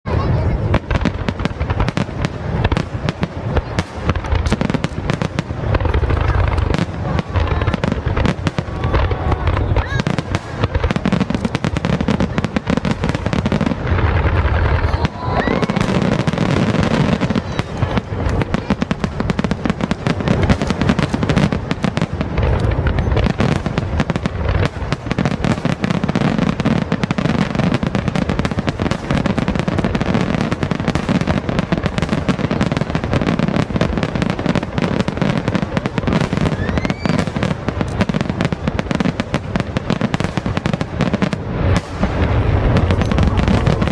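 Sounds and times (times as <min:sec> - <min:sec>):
deep firework booms: 0:00.0 - 0:43.9
fireworks bursts and crackling: 0:00.0 - 0:43.9
rising firework whistles: 0:36.0 - 0:37.8.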